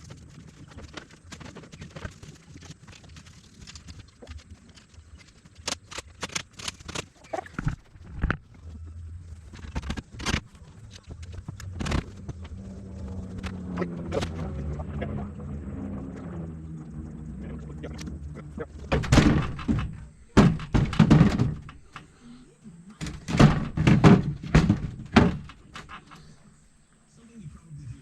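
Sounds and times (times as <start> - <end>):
low steady hum: 6.8 - 28.0
heavy thunks and knocks: 17.6 - 22.1, 23.0 - 26.4.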